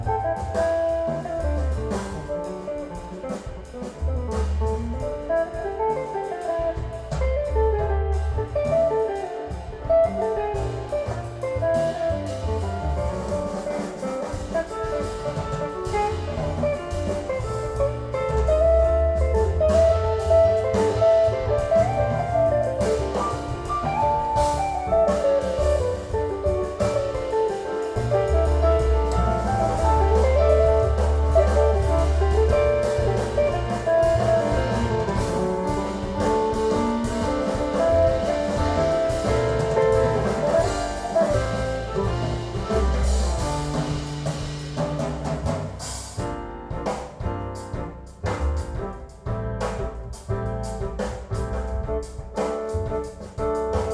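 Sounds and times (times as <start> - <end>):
instrumental music with drums and bass: 0.0 - 53.9.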